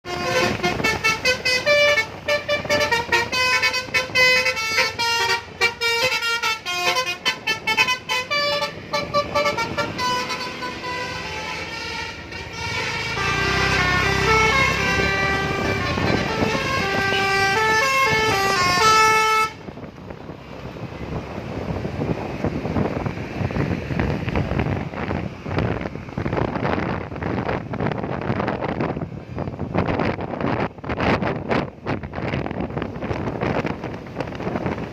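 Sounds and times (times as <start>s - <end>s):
bus musical air horn melody: 0.0s - 19.8s.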